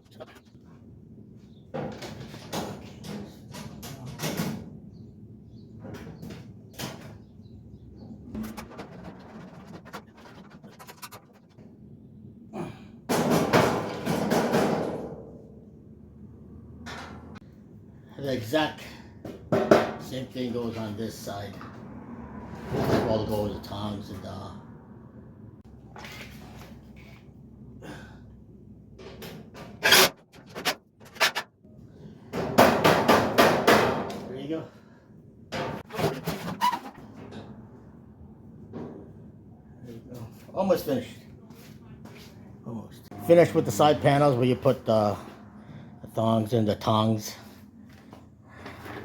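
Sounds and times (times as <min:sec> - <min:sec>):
metal grill parts knocking: 0:08.0 - 0:11.6.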